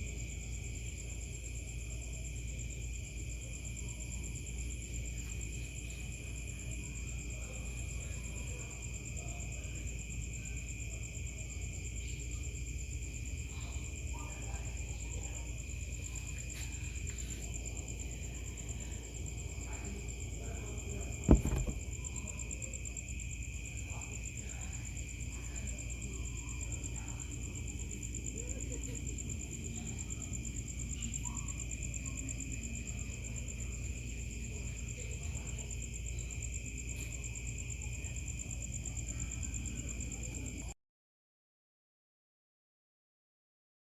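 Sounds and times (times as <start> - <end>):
night insects chorus: 0.0 - 40.7
sharp knock: 21.3 - 22.0.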